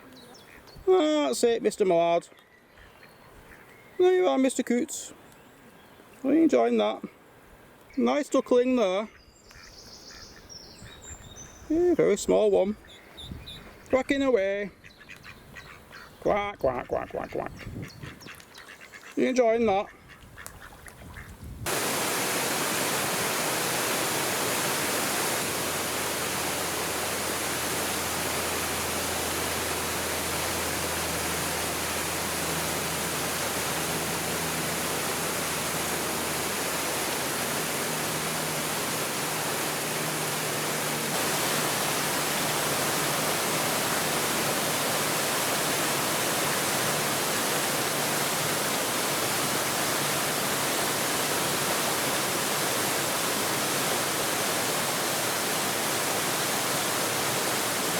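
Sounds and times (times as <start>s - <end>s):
steady rushing noise: 21.7s - 53.1s.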